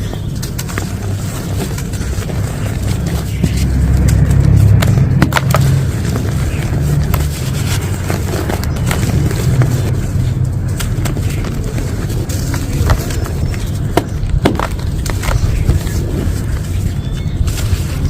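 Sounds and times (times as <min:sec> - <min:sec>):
low rumble: 0:00.3 - 0:18.0.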